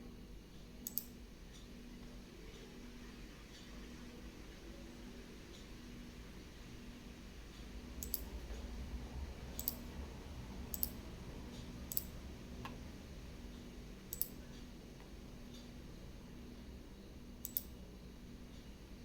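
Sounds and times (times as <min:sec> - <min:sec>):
faint low hum: 0:00.0 - 0:19.0
sharp short clicks: 0:00.8 - 0:01.2, 0:08.0 - 0:08.3, 0:09.6 - 0:09.8, 0:10.7 - 0:11.0, 0:11.9 - 0:12.1, 0:14.1 - 0:14.4, 0:17.4 - 0:17.8.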